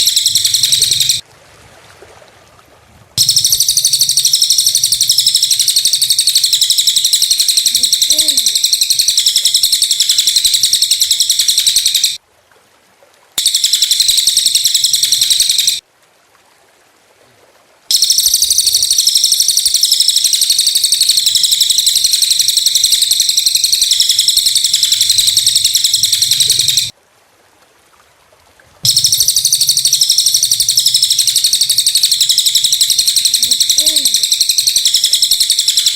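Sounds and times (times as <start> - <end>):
songbirds chirping trills: 0.0 - 1.2, 3.2 - 12.2, 13.4 - 15.8, 17.9 - 26.9, 28.8 - 35.9.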